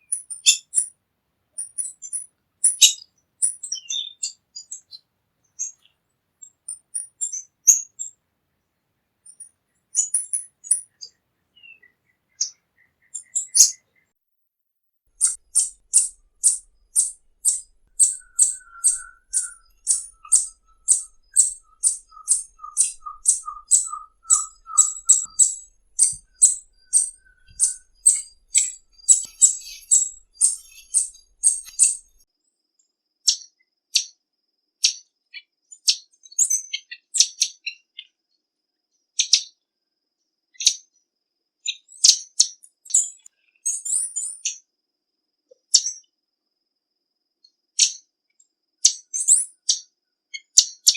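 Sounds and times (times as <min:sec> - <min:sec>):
bird chip notes: 0:15.2 - 0:32.2.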